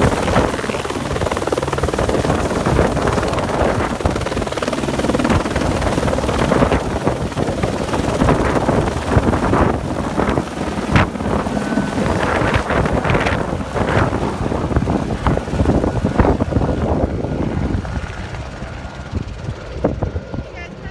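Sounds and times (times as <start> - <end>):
helicopter rotor and turbine: 0.0 - 20.9
wind buffeting microphone: 0.0 - 20.9.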